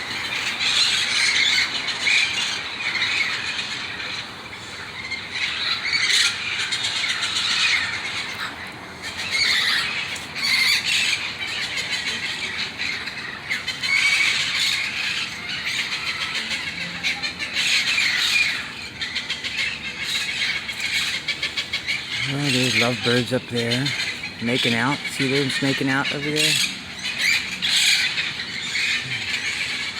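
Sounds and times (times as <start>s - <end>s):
parrots squawking and screeching: 0.0s - 29.9s.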